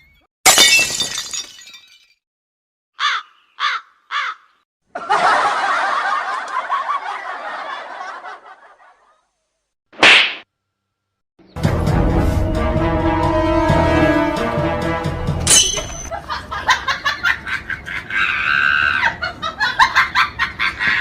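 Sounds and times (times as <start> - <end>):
glass breaking crash: 0.5 - 2.2, 15.5 - 16.1.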